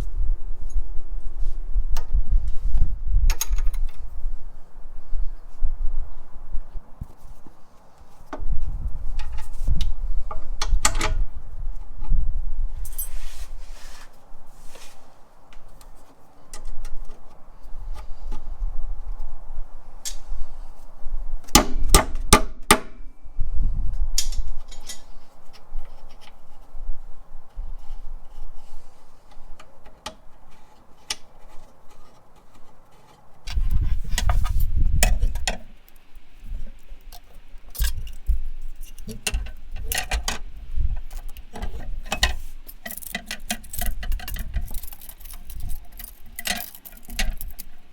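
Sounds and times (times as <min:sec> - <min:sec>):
metal tools clinking: 0:12.8 - 0:13.3, 0:24.2 - 0:25.2, 0:41.0 - 0:47.9.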